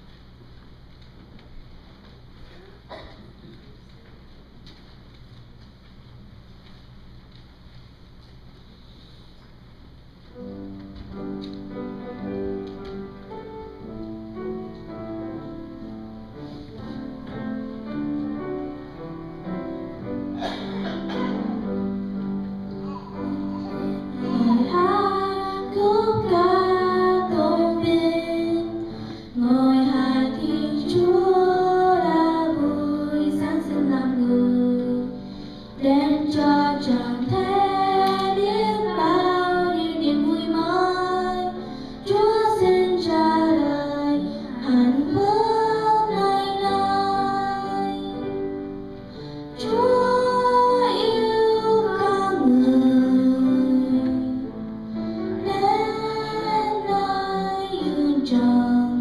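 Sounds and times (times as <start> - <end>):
women and children singing: 24.2 - 35.2, 35.8 - 48.2, 49.6 - 54.4, 55.4 - 59.0.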